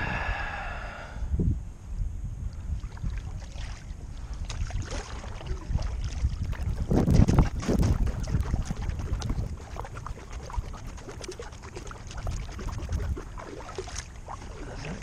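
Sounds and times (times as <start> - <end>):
wind rumbling on microphone: 0.0 - 15.0
water splashing against hull: 2.5 - 15.0.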